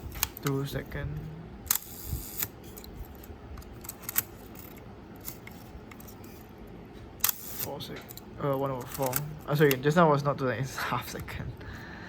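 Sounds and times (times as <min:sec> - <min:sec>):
camera shutter running: 0:01.7 - 0:06.3
small mechanical clicks: 0:01.7 - 0:06.4, 0:07.2 - 0:09.9.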